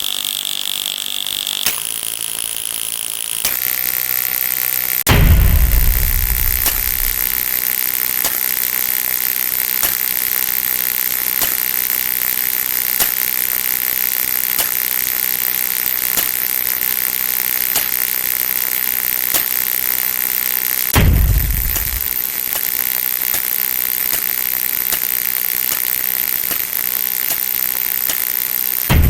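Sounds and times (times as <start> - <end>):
mechanical hissing: 0.0 - 29.0
deep falling boom: 5.1 - 7.4, 21.0 - 22.1.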